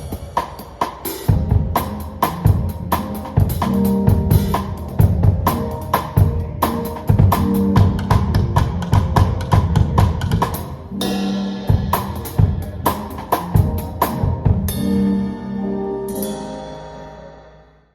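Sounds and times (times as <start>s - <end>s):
drum kit fills: 0.0s - 17.1s
live band playing chords: 0.0s - 17.3s
cymbal crash: 11.0s - 13.2s.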